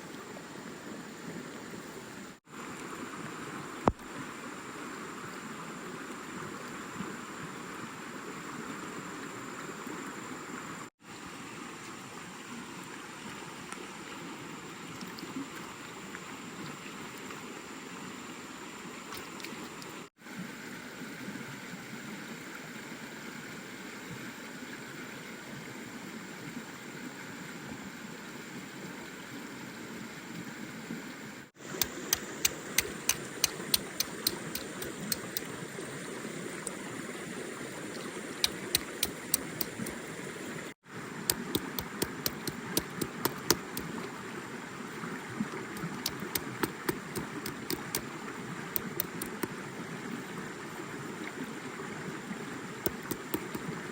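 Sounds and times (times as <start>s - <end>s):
running water: 31.5s - 53.9s
sharp clicking taps: 31.7s - 35.5s, 38.4s - 40.0s, 41.3s - 43.9s, 45.8s - 48.1s, 48.8s - 49.5s, 52.9s - 53.6s.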